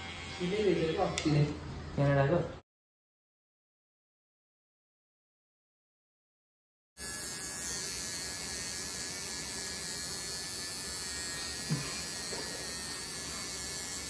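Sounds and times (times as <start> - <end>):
electric hair clippers buzzing: 0.0 - 1.6, 7.0 - 14.0.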